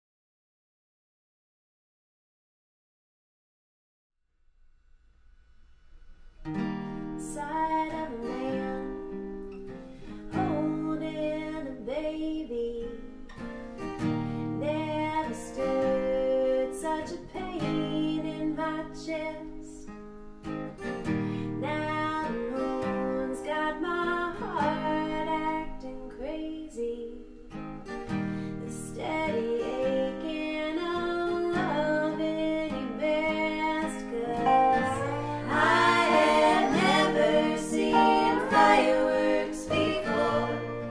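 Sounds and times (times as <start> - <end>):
acoustic guitar chords: 6.4 - 40.9
dobro slide melody: 34.1 - 40.9.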